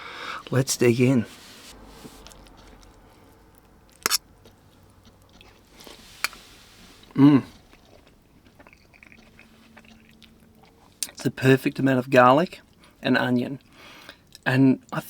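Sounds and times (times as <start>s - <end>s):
person chewing food: 2.0s - 11.2s.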